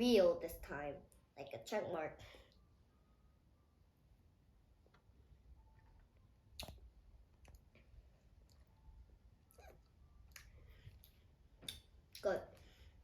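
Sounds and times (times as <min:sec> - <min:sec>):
person chewing candy: 0:06.5 - 0:08.8, 0:09.4 - 0:12.3.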